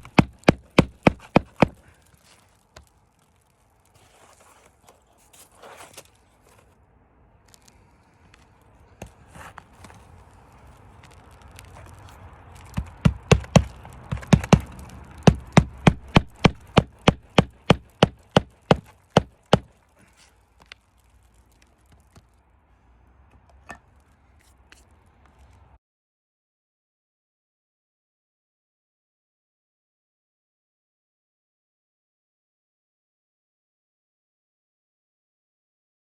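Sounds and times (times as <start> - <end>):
scattered knocks: 0.0 - 1.8, 12.7 - 19.7
hammer blows on a roof: 0.0 - 1.9, 12.6 - 19.8
scraping and handling noise: 0.0 - 22.5, 23.2 - 25.8.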